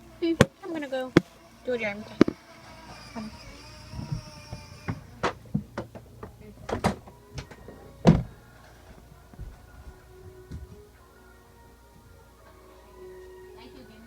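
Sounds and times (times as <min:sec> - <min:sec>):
toys knocking and clacking: 0:00.4 - 0:08.3.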